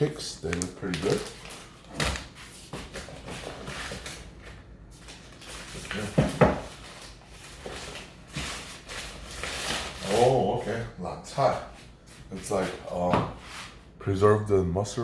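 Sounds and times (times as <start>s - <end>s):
food packages being handled: 0.0s - 10.4s.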